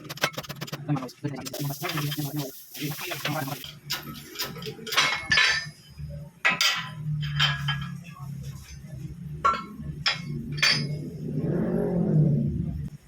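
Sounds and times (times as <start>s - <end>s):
metal tools clinking and knocking: 3.6s - 8.1s, 9.4s - 11.1s.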